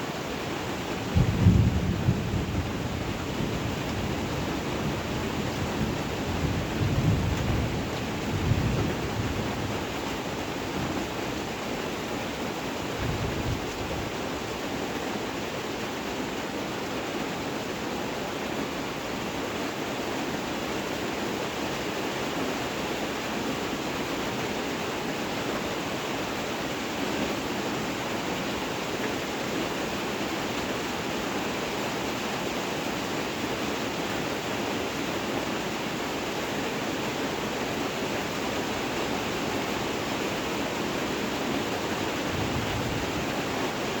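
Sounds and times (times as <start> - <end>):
heavy rain: 0.0 - 44.0
thunder rumble: 1.1 - 9.8.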